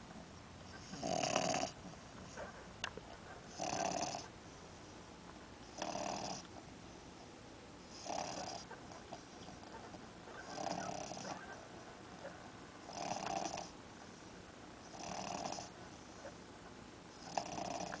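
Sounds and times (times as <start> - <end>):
dog snoring: 0.7 - 2.5, 3.5 - 4.3, 5.7 - 6.5, 7.9 - 9.6, 10.4 - 11.5, 12.9 - 16.4, 17.1 - 18.0.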